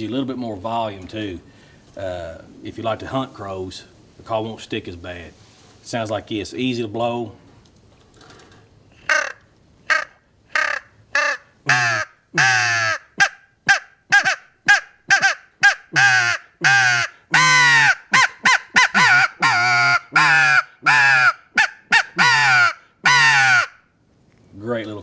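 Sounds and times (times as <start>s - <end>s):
crow call caws: 9.0s - 13.1s, 15.1s - 18.0s, 18.8s - 23.8s.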